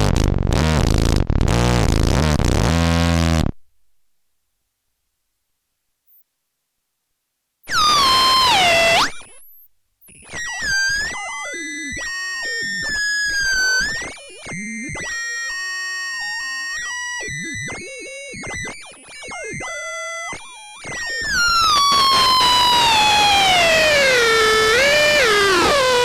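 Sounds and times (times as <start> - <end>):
distorted synthesizer tone: 21.2 - 26.0.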